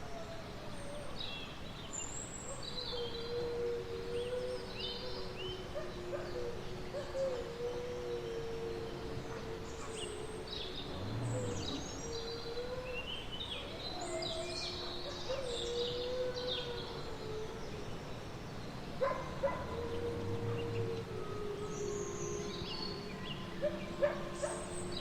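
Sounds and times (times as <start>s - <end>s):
wolves howling: 2.5s - 25.0s
small birds chirping: 9.0s - 25.0s.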